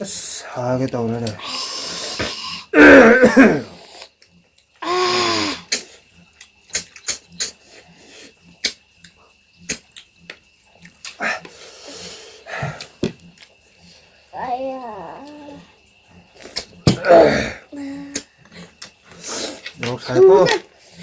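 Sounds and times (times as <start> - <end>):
mouth clicks and smacks eating: 5.7 - 11.6, 16.2 - 17.0, 18.1 - 19.8.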